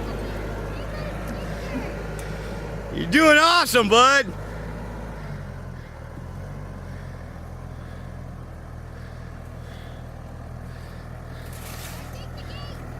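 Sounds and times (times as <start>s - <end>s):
farm vehicle engine droning: 0.0s - 12.9s.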